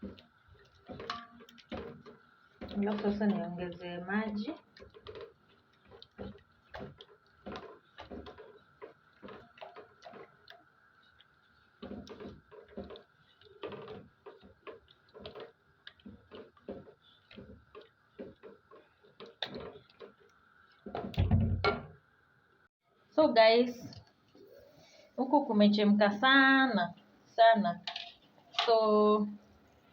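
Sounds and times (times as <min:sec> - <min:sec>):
sauce boiling and popping: 0:00.0 - 0:22.7.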